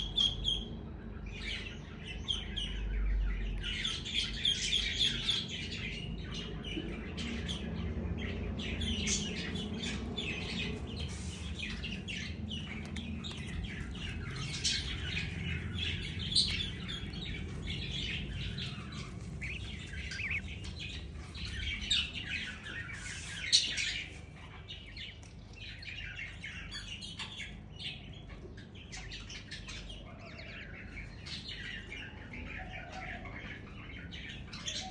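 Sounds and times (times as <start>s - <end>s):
low steady hum: 0.0s - 26.6s
baby budgerigars chirping: 0.0s - 34.9s.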